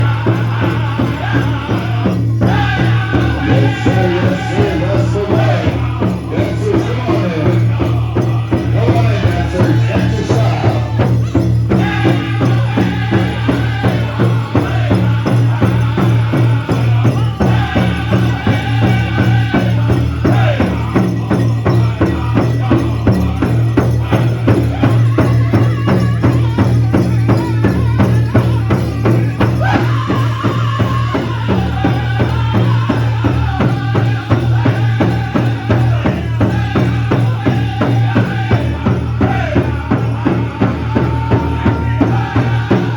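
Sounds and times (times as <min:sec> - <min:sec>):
drummers singing together: 0:00.0 - 0:42.9
large drum beating steady rhythm: 0:00.0 - 0:42.9.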